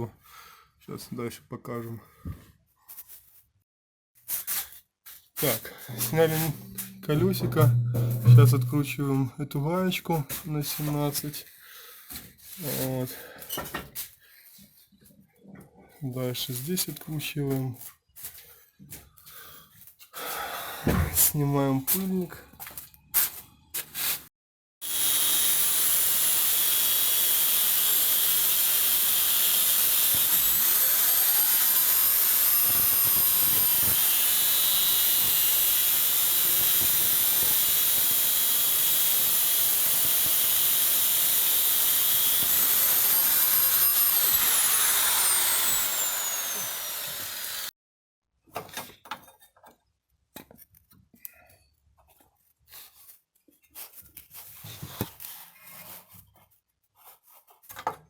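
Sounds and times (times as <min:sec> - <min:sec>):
high-speed power tool running: 0:06.0 - 0:08.8, 0:24.8 - 0:47.7.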